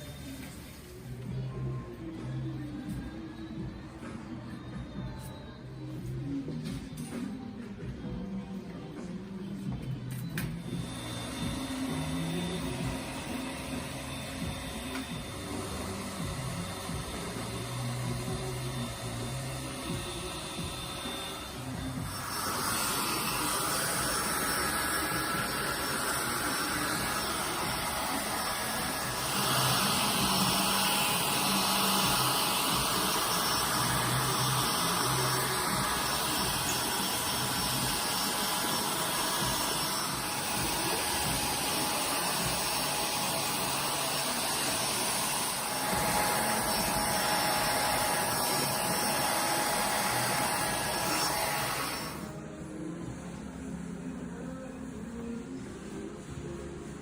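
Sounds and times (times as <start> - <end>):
hair dryer running: 10.4 - 52.4.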